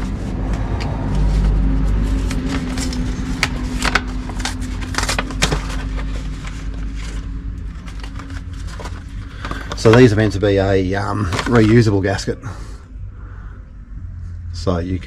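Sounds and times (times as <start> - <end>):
low vehicle rumble: 0.0 - 15.0.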